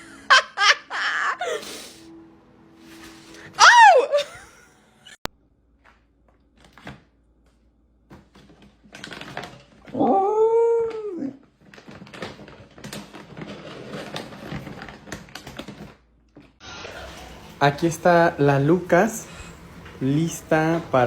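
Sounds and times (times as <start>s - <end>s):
dog howling call: 3.5s - 4.3s, 9.9s - 11.4s.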